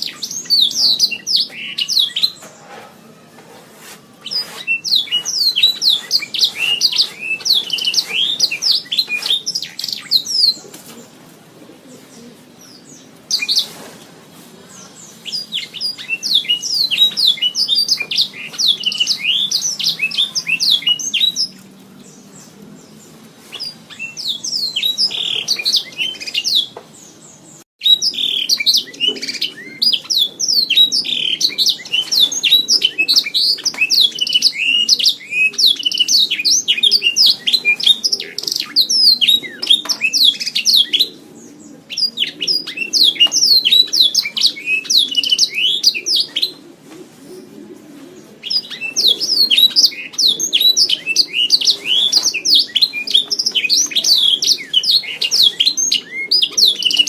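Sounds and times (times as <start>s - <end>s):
canary trilling and chirping: 4.2s - 10.6s, 15.1s - 21.6s.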